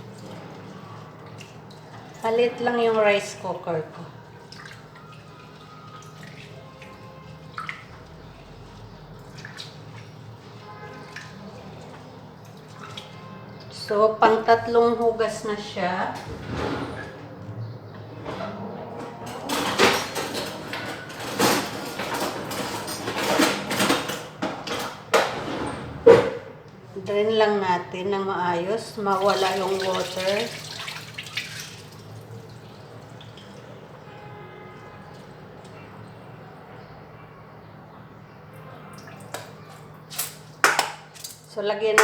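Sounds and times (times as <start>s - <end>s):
tap water splashing into a pot: 29.1s - 34.1s, 38.9s - 41.4s.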